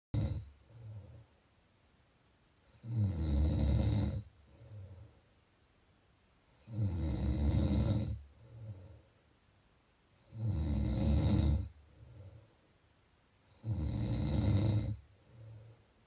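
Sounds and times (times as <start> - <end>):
person snoring: 0.2 - 1.2, 2.7 - 5.1, 6.6 - 9.0, 10.2 - 12.4, 13.5 - 15.7
soft breath: 0.4 - 1.5, 4.3 - 5.4, 8.2 - 9.4, 11.7 - 12.8, 15.0 - 16.0.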